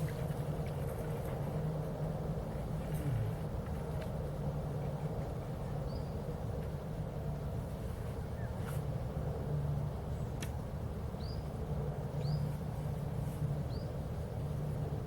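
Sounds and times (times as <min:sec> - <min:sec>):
low machinery hum: 0:00.0 - 0:15.0
small bird chirping: 0:12.2 - 0:12.6.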